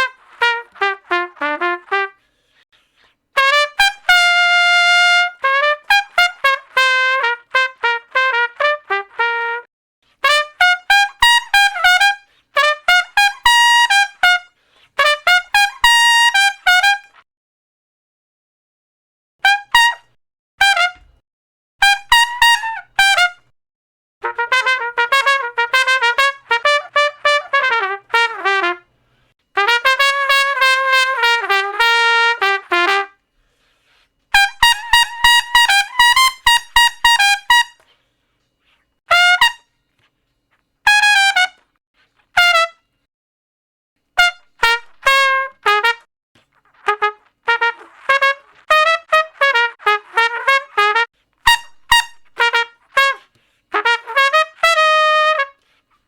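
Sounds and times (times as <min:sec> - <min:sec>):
solo trumpet playing: 0:00.0 - 0:02.3, 0:03.3 - 0:17.2, 0:19.4 - 0:21.2, 0:21.8 - 0:23.5, 0:24.2 - 0:28.9, 0:29.6 - 0:33.2, 0:34.3 - 0:37.9, 0:39.1 - 0:39.8, 0:40.8 - 0:41.7, 0:42.4 - 0:42.8, 0:44.2 - 0:55.7.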